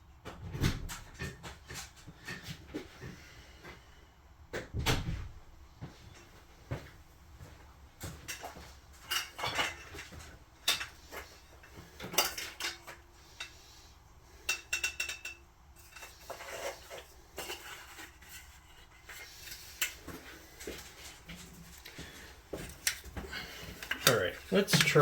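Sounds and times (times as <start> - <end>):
hard objects clattering: 14.4 - 25.0.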